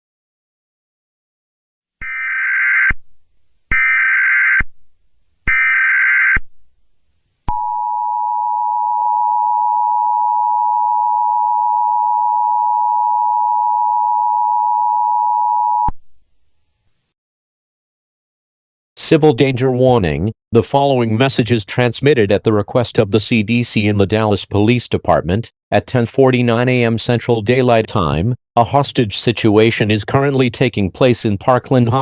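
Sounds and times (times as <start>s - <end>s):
steady dual-tone alert signal: 7.5s - 15.9s.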